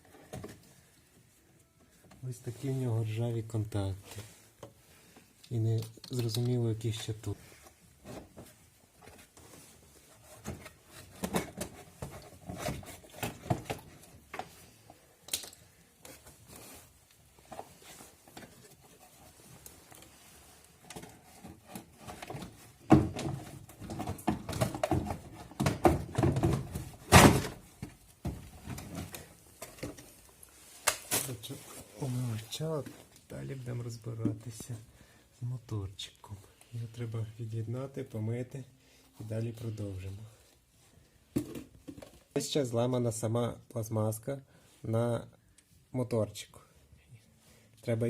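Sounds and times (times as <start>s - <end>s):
rustling: 0.0s - 37.8s.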